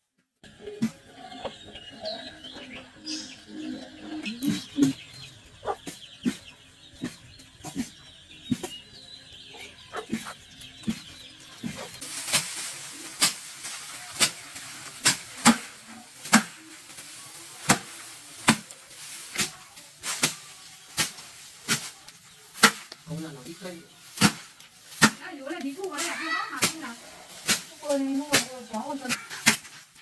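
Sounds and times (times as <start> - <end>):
rice stalks crunching: 11.6 - 30.0.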